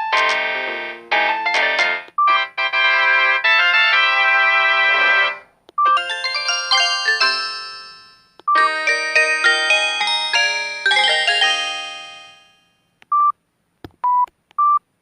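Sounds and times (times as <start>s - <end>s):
polyphonic ringtone melodies: 4.8s - 12.8s.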